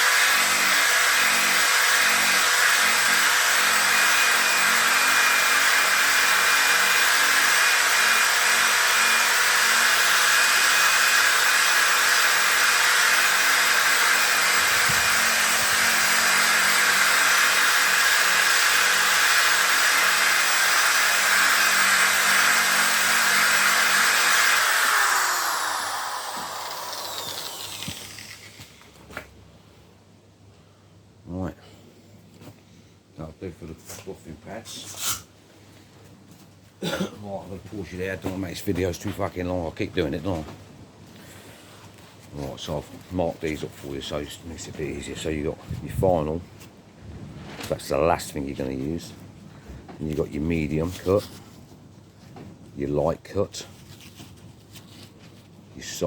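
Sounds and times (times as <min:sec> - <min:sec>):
electric power tool motor running: 0:00.0 - 0:28.8.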